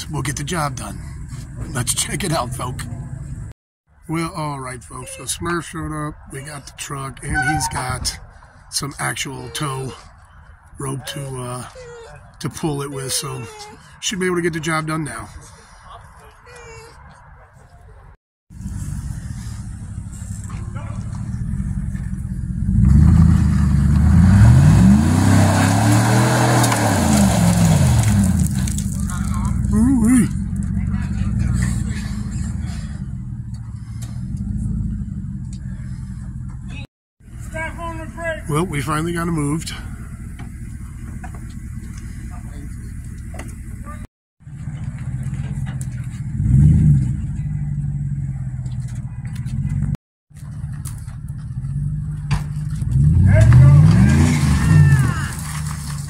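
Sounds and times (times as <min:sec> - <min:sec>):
truck engine revving under load: 0:18.5 - 0:36.7, 0:44.5 - 0:48.6, 0:51.3 - 0:55.9.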